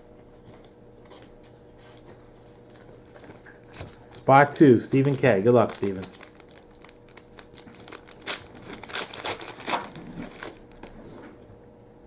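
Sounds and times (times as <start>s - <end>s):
plastic wrapper crinkling and tearing: 3.7s - 11.0s.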